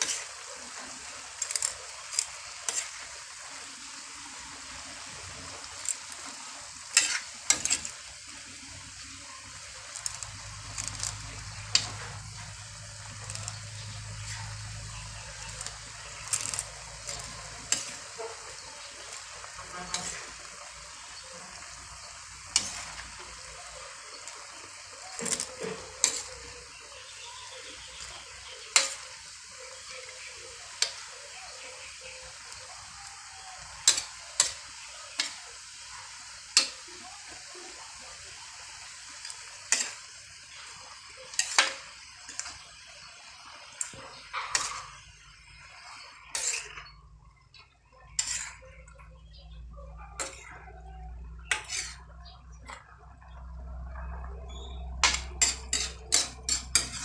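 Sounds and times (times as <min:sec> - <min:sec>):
utensil clinking and scraping pan: 0:00.0 - 0:03.1, 0:05.7 - 0:08.1, 0:09.9 - 0:30.1, 0:33.8 - 0:36.8, 0:39.2 - 0:42.6, 0:43.8 - 0:47.0, 0:47.6 - 0:50.5, 0:51.4 - 0:52.8, 0:54.6 - 0:57.0
noodles sizzling in a pan: 0:00.0 - 0:57.0.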